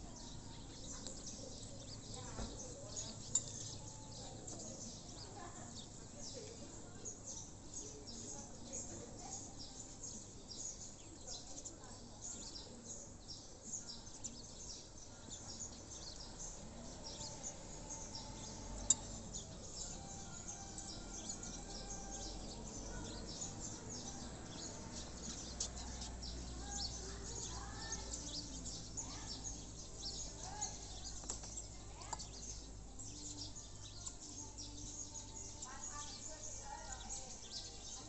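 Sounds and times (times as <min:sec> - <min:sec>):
birds chirping: 0:00.0 - 0:38.0.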